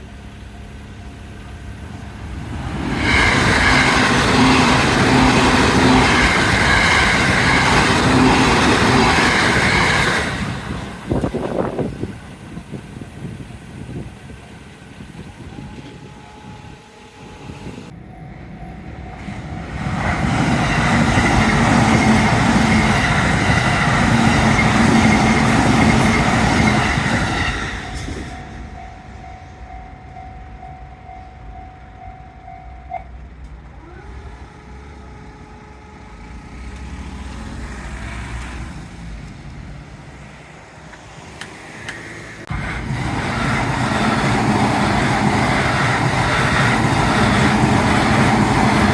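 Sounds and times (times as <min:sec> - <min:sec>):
train passing over crossing: 0:00.0 - 0:48.9
loud vehicle passing: 0:02.2 - 0:11.7, 0:34.0 - 0:48.9
steady tone: 0:15.2 - 0:37.6.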